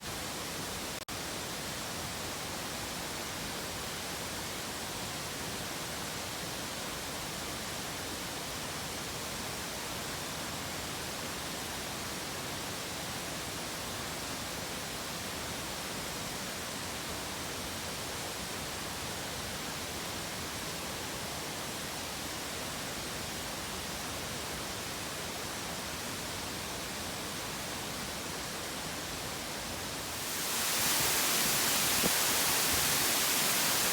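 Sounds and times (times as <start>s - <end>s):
waterfall rushing: 29.6s - 33.9s.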